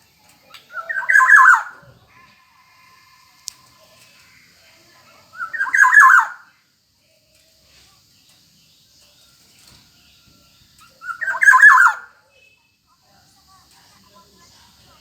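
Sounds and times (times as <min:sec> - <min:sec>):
bird calling: 0:00.4 - 0:02.3, 0:04.1 - 0:06.5, 0:10.8 - 0:12.2.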